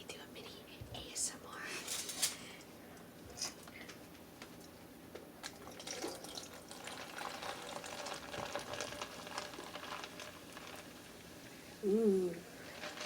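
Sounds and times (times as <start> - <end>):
soda fizzing in a cup: 5.5 - 11.6, 12.6 - 13.0.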